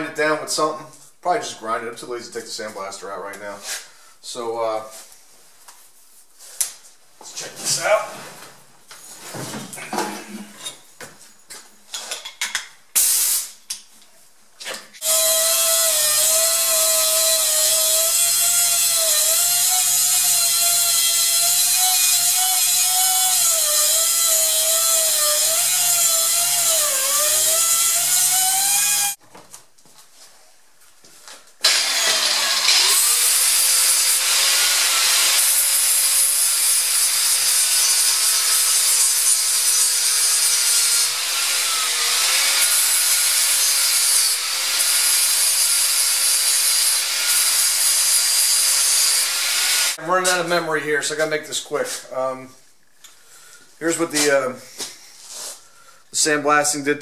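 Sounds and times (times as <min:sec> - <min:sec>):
grinder cutting steel: 0:15.0 - 0:29.2, 0:31.6 - 0:50.0.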